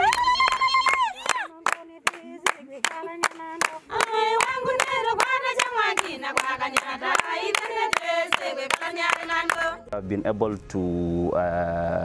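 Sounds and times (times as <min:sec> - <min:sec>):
rhythmic hand clapping: 0:00.0 - 0:09.8
group singing: 0:01.5 - 0:10.0.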